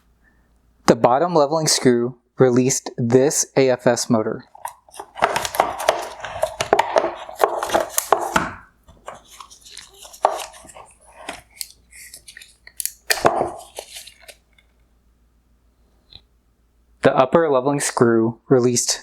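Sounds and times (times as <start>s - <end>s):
plastic parts clicking and clattering: 4.5s - 14.7s.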